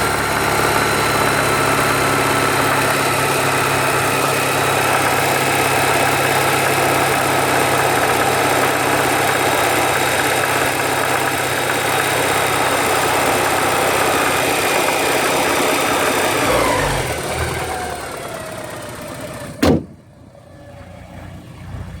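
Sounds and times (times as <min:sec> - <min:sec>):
car engine running: 0:00.0 - 0:22.0
sharp thump: 0:19.5 - 0:20.1.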